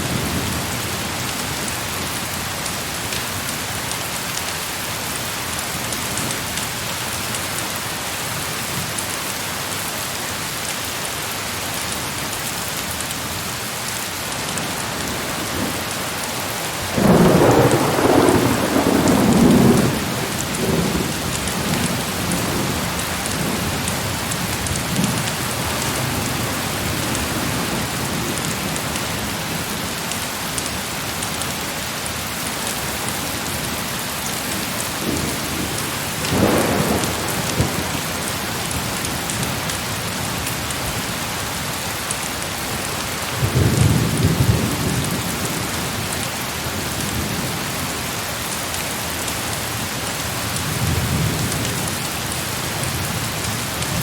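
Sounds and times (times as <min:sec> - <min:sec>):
heavy rain falling: 0:00.0 - 0:54.0
distant thunder rolls: 0:15.1 - 0:23.6, 0:35.0 - 0:38.8.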